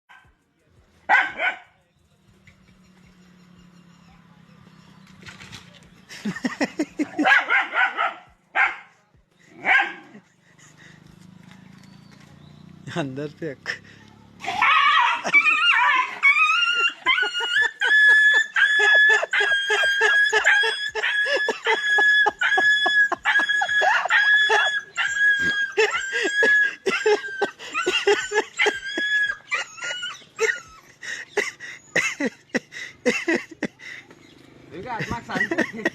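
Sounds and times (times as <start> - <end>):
animal high-pitched cries: 14.4 - 30.9.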